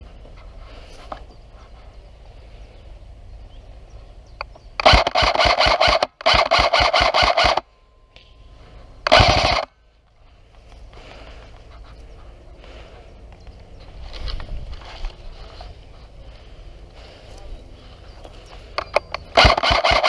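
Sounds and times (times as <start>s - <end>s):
airsoft gun full-auto firing: 4.8s - 7.6s, 9.0s - 9.7s, 18.8s - 20.0s.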